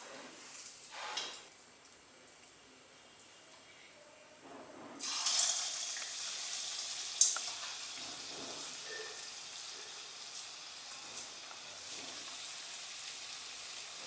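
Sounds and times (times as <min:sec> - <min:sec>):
food sizzling in hot oil: 0:05.0 - 0:14.0.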